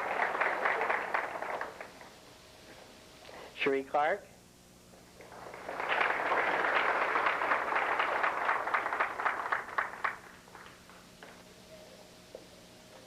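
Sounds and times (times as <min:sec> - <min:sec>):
audience applause: 0:00.0 - 0:02.1, 0:05.3 - 0:11.0.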